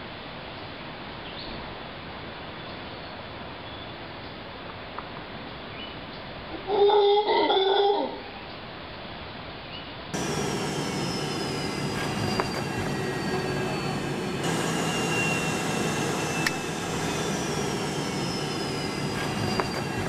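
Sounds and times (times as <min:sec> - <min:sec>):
high squealing tones: 0:10.2 - 0:20.0
sharp clicks: 0:10.2 - 0:20.0
steady rumbling noise: 0:10.2 - 0:20.0.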